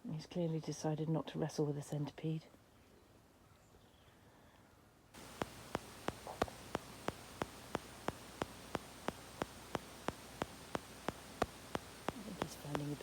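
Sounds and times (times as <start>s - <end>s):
sharp electronic clicks: 5.2s - 13.0s
steady hiss: 5.2s - 13.0s.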